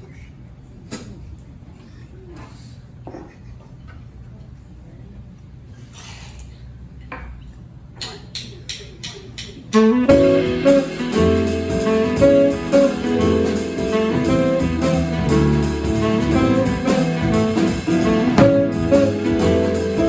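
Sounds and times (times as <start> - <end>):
jazz quartet playing: 9.8 - 20.0
saxophone melody: 9.8 - 20.0.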